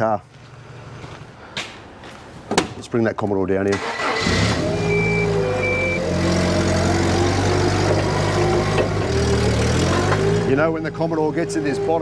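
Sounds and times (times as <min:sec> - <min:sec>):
short high beeps: 0:04.8 - 0:06.0.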